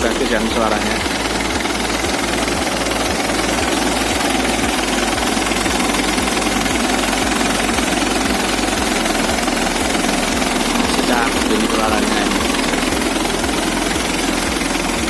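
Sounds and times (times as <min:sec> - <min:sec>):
diesel engine idling: 0:00.0 - 0:15.0.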